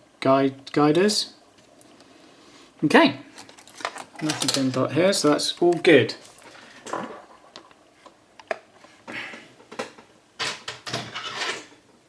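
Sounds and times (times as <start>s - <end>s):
rustling handling noises: 1.5s - 10.1s.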